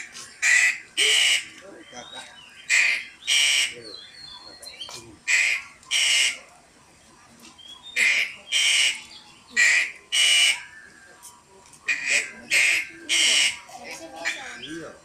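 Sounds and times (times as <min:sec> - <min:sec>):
crow cawing: 0:00.4 - 0:01.5, 0:02.7 - 0:04.0, 0:05.2 - 0:06.4, 0:08.0 - 0:09.0, 0:09.6 - 0:10.8, 0:11.9 - 0:14.7.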